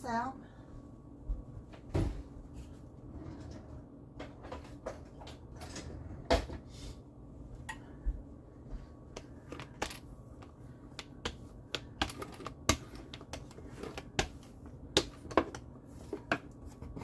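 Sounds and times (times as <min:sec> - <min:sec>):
rolling pin clicking on dough: 0:10.4 - 0:15.7.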